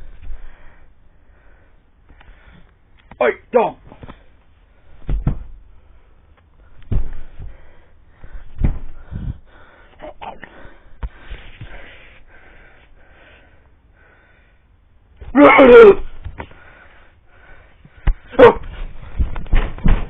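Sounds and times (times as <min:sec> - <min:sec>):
dull thumps and bumps: 0:04.9 - 0:05.7, 0:06.6 - 0:09.7, 0:17.9 - 0:20.0.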